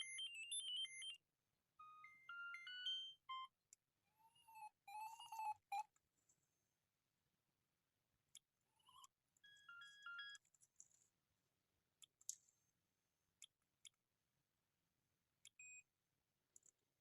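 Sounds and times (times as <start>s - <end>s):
mobile phone ringtones: 0.0s - 1.2s, 1.8s - 3.5s.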